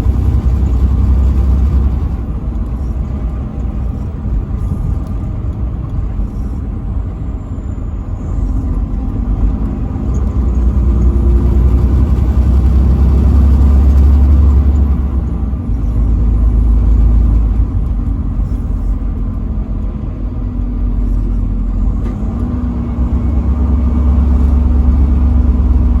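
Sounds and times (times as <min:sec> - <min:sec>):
truck engine and road rumble: 0:00.0 - 0:26.0.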